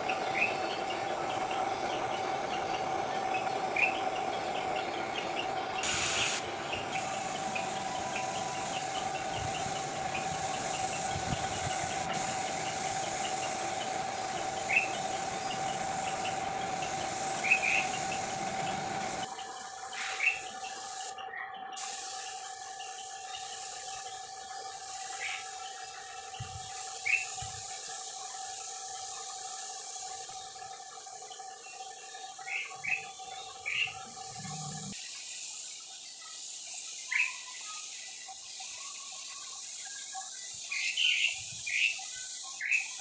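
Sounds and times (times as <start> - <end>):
spray gun hissing: 0.0 - 21.2, 21.8 - 31.4, 32.2 - 43.0
bird chirps: 0.0 - 27.5, 31.2 - 34.9.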